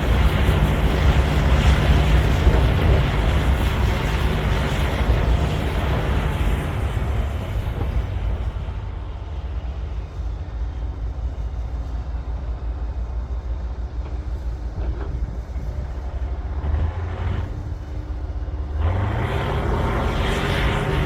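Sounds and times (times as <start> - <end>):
bulldozer diesel engine revving: 0.0 - 8.7, 16.3 - 21.0.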